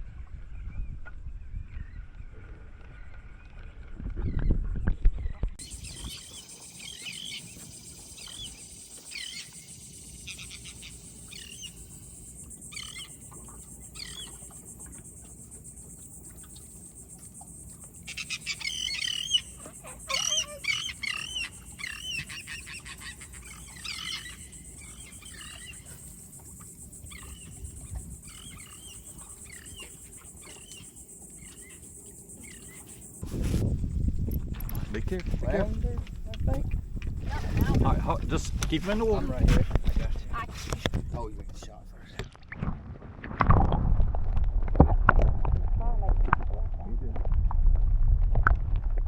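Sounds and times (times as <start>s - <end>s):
birds chirping: 5.2s - 33.2s, 37.4s - 42.1s
steady high-pitched hiss: 5.6s - 41.8s.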